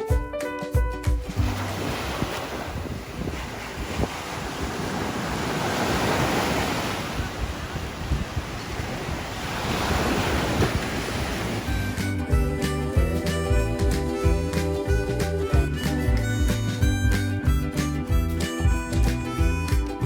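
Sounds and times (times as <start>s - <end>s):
background music: 0.0s - 2.0s, 11.7s - 20.0s
surf breaking on beach: 1.3s - 12.0s
wind buffeting microphone: 1.3s - 13.1s.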